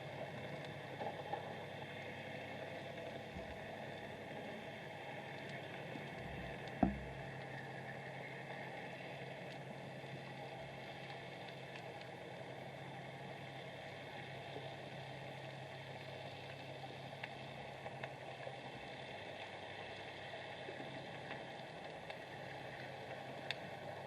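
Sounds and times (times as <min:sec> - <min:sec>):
low hum: 0:02.9 - 0:09.5
faint clicks: 0:19.4 - 0:23.7.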